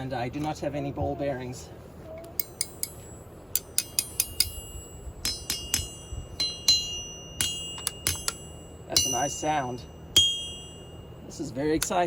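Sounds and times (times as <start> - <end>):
light hammer taps on anvil: 5.2 - 10.8.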